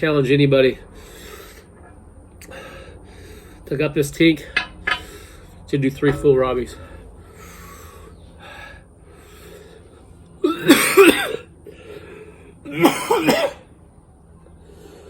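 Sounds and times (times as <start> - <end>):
person coughing hard: 10.4 - 11.5, 12.7 - 13.6.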